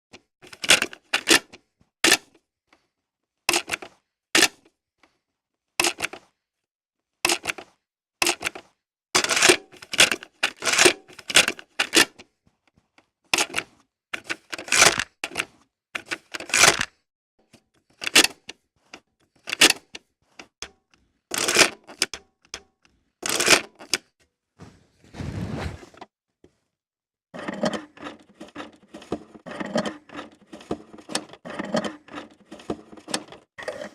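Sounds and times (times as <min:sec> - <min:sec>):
rough rumble: 0:24.6 - 0:25.9.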